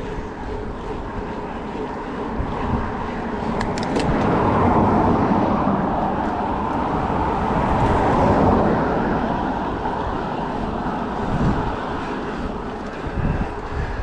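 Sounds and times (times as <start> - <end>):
wind rumble on microphone: 0.0 - 14.0.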